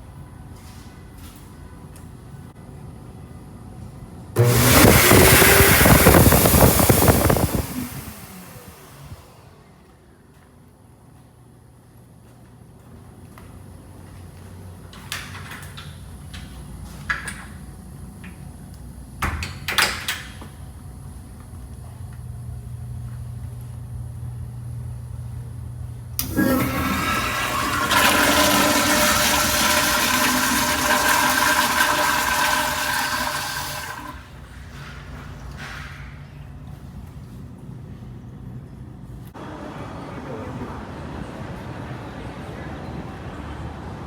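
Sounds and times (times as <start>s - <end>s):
toilet flushing water rush: 4.4s - 9.6s, 26.2s - 34.5s.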